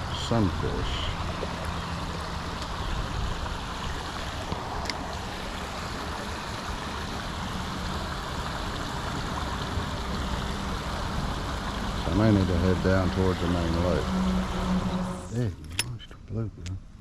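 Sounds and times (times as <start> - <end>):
creek water running: 0.0 - 15.5
faint low hum: 12.0 - 17.0.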